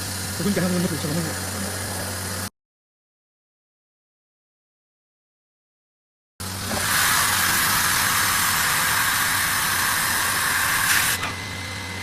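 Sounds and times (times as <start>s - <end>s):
laser cutter gas hiss: 6.6s - 11.3s.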